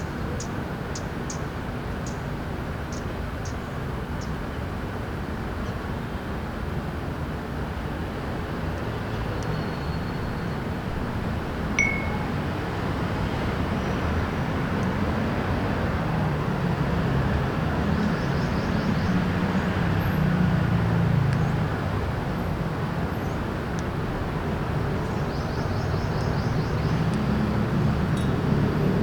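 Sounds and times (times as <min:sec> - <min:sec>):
traffic rumble: 0:07.0 - 0:29.0.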